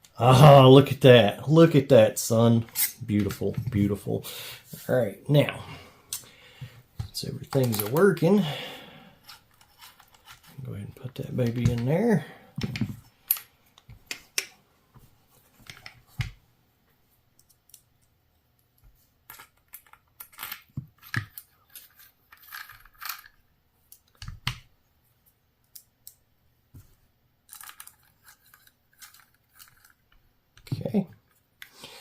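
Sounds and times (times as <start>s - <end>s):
gun parts clicking and scraping: 7.4s - 8.4s, 9.2s - 12.0s, 19.3s - 24.3s, 27.5s - 31.4s.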